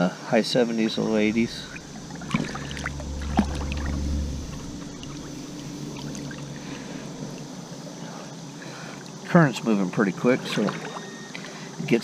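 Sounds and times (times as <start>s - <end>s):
low rumble: 0.6s - 9.2s
creek water flowing: 0.9s - 9.0s
person wading through water: 1.2s - 7.9s.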